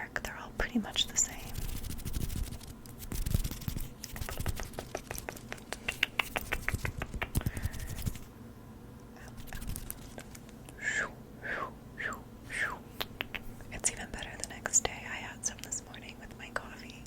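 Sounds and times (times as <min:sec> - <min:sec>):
light tapping and scratching: 0:01.0 - 0:08.2, 0:09.2 - 0:10.6.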